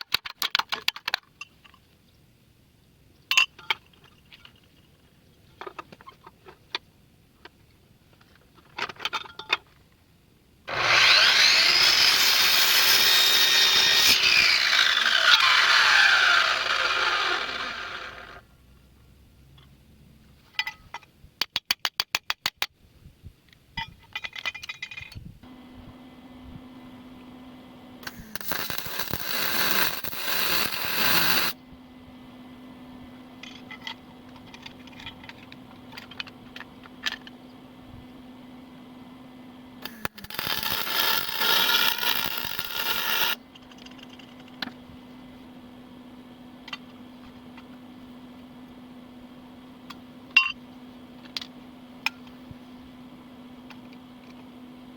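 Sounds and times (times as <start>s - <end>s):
steady low hum: 25.3s - 54.9s
welding arc crackling hiss: 28.0s - 31.6s, 39.8s - 43.4s.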